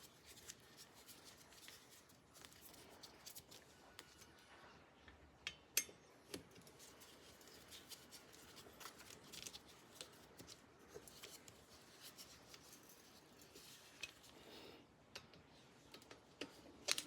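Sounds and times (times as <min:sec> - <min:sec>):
light metallic clicks and scrapes: 0:05.8 - 0:14.4.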